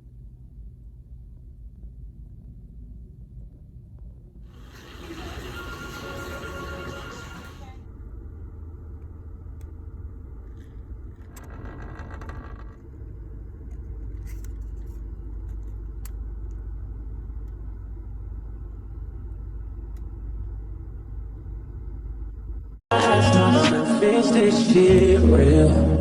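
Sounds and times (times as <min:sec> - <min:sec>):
light clicks and rattles: 0:10.4 - 0:17.9.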